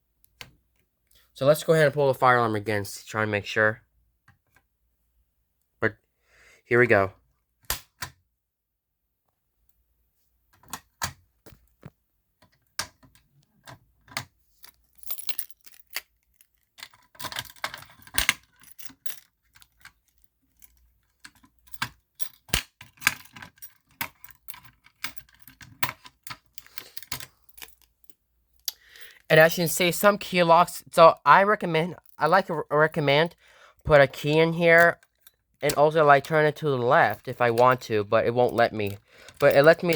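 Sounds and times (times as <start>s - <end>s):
keys jangling and clicking: 14.6s - 28.2s, 34.2s - 39.9s.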